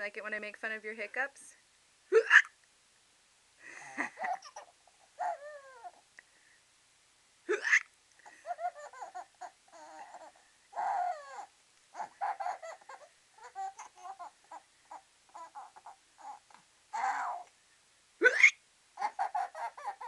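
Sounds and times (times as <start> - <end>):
baby giggling: 2.1 - 2.6, 3.8 - 6.0, 7.5 - 17.5, 18.2 - 20.0
baby hiccup: 7.5 - 7.9.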